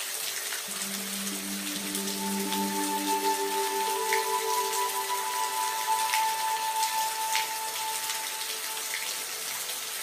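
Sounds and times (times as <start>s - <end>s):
rain hiss: 0.0s - 10.0s
held musical tone: 0.7s - 10.0s.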